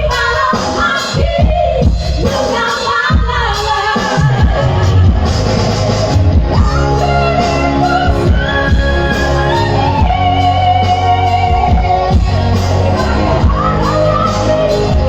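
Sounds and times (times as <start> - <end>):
song with guitar and bass: 3.8 - 15.0.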